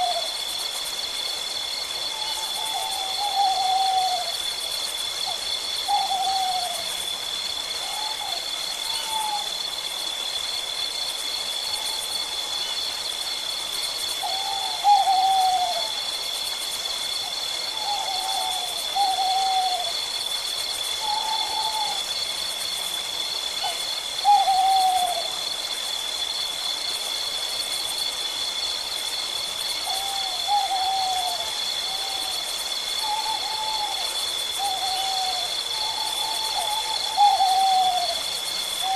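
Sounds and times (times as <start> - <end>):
owl calling: 2.1 - 4.4, 5.2 - 6.9, 7.8 - 9.5, 14.2 - 16.0, 17.7 - 20.0, 21.0 - 22.0, 23.6 - 25.3, 29.9 - 32.4, 33.0 - 38.2.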